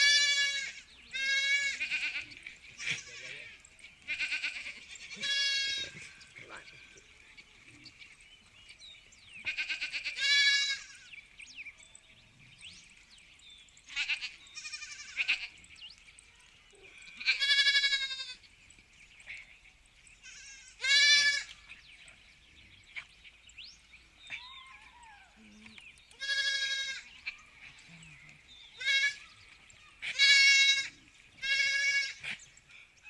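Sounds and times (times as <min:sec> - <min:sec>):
sheep bleating: 0:00.0 - 0:06.2, 0:09.4 - 0:11.1, 0:13.9 - 0:15.6, 0:17.1 - 0:18.4, 0:20.2 - 0:21.6, 0:26.2 - 0:27.9, 0:28.8 - 0:29.3, 0:30.0 - 0:32.2.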